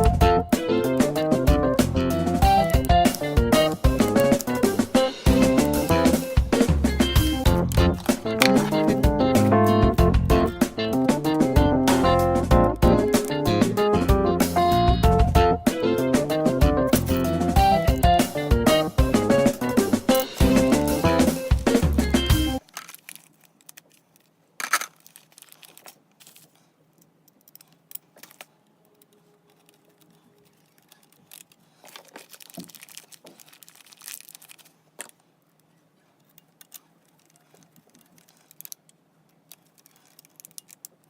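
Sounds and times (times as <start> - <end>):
plastic packaging crinkling: 2.3 - 9.0, 21.4 - 35.7, 36.3 - 41.0
small parts clicking and clinking: 2.5 - 6.5, 20.0 - 20.9, 22.6 - 41.0.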